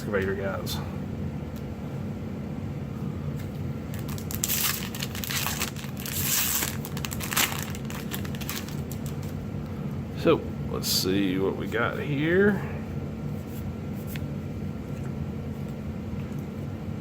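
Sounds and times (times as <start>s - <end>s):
foil wrapper tearing and crinkling: 3.9s - 9.4s.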